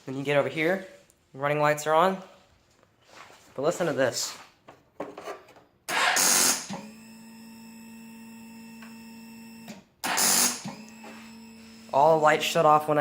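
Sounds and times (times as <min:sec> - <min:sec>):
steady electric hum: 0:10.5 - 0:13.0.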